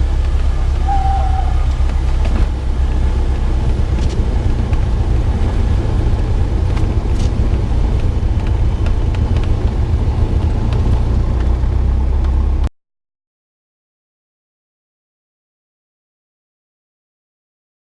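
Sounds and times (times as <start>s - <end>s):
aircraft low rumble: 0.0s - 12.7s.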